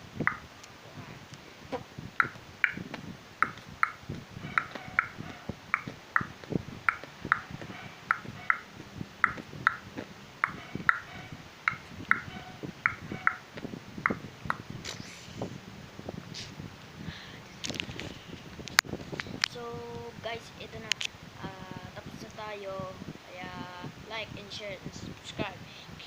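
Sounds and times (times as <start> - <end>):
soft low thumps: 0.0 - 20.2
beatbox mouth clicks: 0.2 - 0.4, 2.2 - 4.0, 4.6 - 11.1, 11.7 - 15.1.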